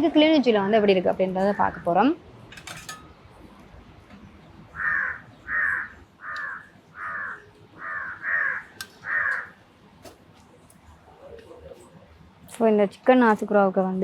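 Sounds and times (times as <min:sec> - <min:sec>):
crow cawing: 0:04.7 - 0:09.6.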